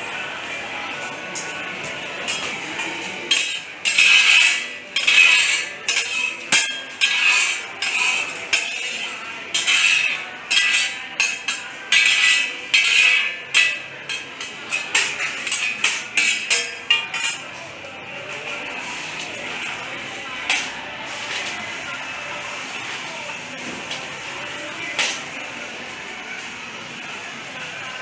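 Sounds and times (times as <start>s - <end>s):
metal spatula scraping a pan: 3.3s - 17.4s.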